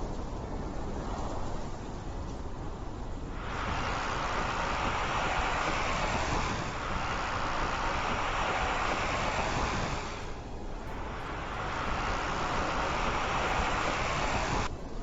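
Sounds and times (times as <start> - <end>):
tyre and road rush: 3.1 - 14.7.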